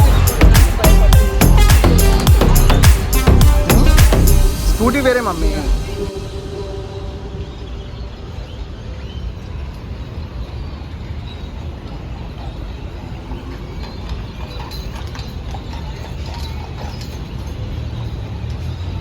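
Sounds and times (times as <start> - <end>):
street rumble: 0.0 - 10.5.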